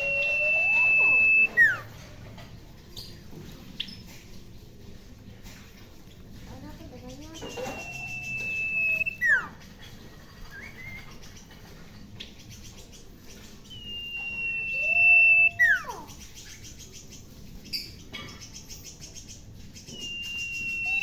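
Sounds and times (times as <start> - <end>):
bird calling shrill whistle: 0.0 - 1.9, 7.4 - 9.6, 13.7 - 16.1, 19.9 - 21.0.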